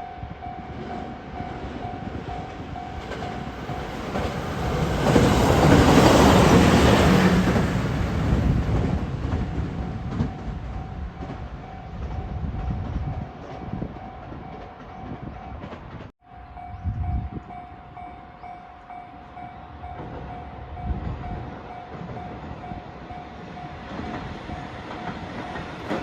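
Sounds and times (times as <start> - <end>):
train rumble: 0.0 - 26.0
level crossing warning bell: 14.1 - 26.0.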